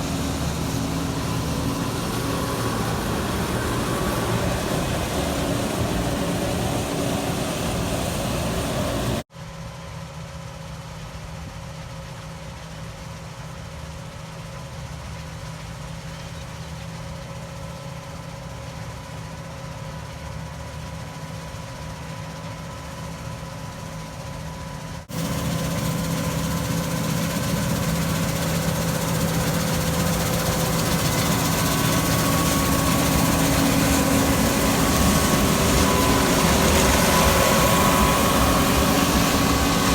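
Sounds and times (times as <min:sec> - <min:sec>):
heavy farm machinery engines: 0:00.0 - 0:09.2, 0:25.1 - 0:39.9
steady hum: 0:00.0 - 0:09.2, 0:25.1 - 0:39.9.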